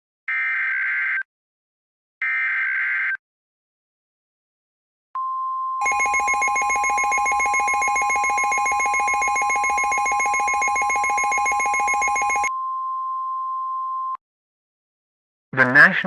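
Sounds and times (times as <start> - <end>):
pulsing ringing alarm: 5.8 - 12.5
steady alert tone: 5.8 - 12.5.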